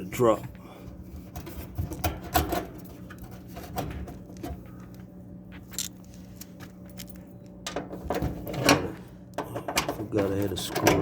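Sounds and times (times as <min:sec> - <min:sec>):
faint steady hum: 0:00.0 - 0:11.0
dryer parts clicking and knocking: 0:01.2 - 0:04.8, 0:07.0 - 0:11.0.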